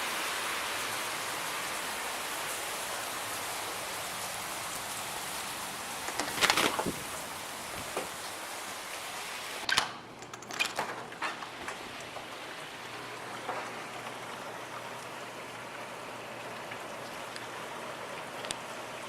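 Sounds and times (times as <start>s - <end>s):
steady rain falling: 0.0s - 19.0s
sharp clicks and knocks: 9.7s - 12.3s.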